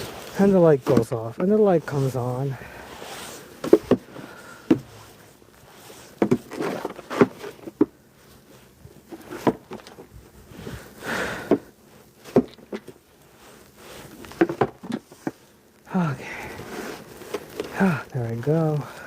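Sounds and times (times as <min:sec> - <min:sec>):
snow shovel scraping on pavement: 0:00.0 - 0:09.7, 0:13.3 - 0:15.4, 0:16.5 - 0:18.8.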